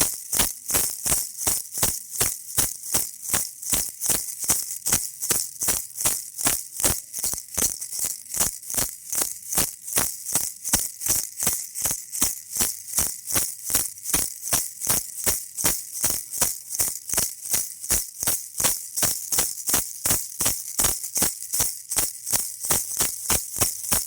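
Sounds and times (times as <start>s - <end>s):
baby rattle shaking: 0.0s - 24.0s.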